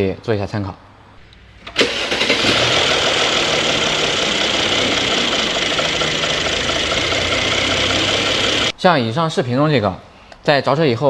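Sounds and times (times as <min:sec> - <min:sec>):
car engine running: 0:01.4 - 0:08.7.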